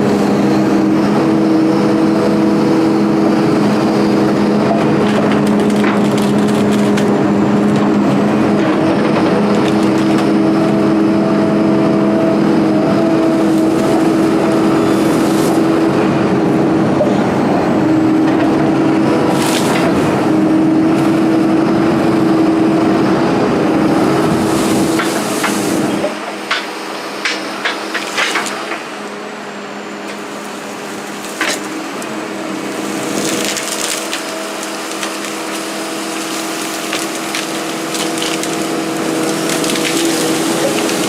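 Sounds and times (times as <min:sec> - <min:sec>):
excavator diesel engine running: 0:00.0 - 0:41.0
knocks and clunks of material: 0:04.8 - 0:08.0, 0:30.1 - 0:31.8.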